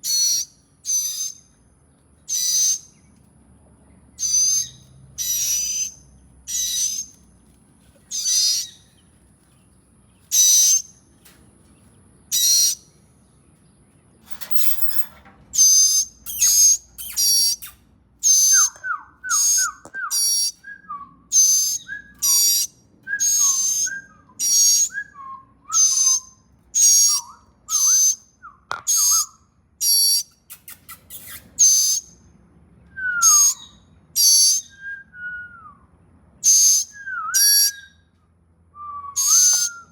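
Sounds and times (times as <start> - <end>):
baby birds shrill calling: 0.0 - 1.6, 2.2 - 3.2, 4.2 - 7.4, 8.0 - 9.5, 10.2 - 11.0, 12.3 - 13.0, 14.3 - 20.7, 21.3 - 32.2, 33.0 - 35.0, 36.4 - 38.0, 39.1 - 39.9.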